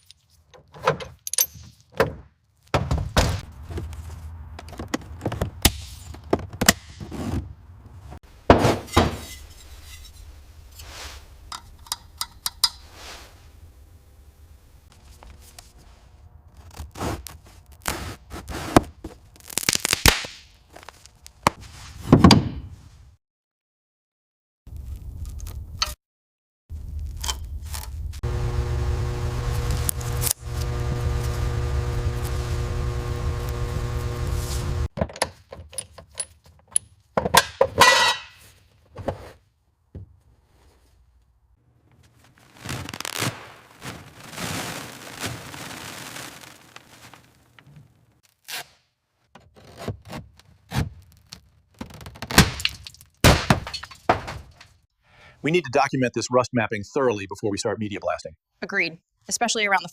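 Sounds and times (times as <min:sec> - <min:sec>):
metal parts clicking and clinking: 0:00.0 - 0:01.9, 0:35.6 - 0:37.0.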